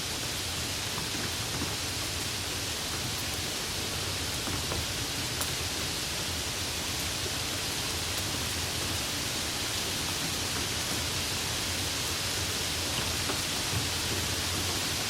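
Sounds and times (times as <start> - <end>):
light rain hiss: 0.0 - 15.0
raindrop ticks: 0.9 - 6.0.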